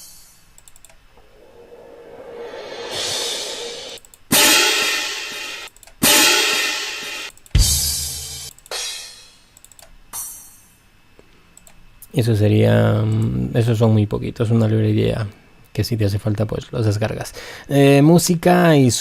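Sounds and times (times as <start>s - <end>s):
cymbal swell: 1.2s - 7.3s
cymbal crashes: 1.4s - 9.3s.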